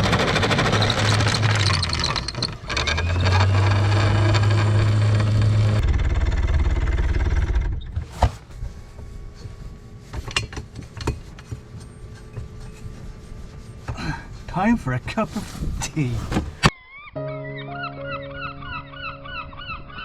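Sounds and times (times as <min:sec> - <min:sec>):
boat engine running: 0:00.0 - 0:16.7.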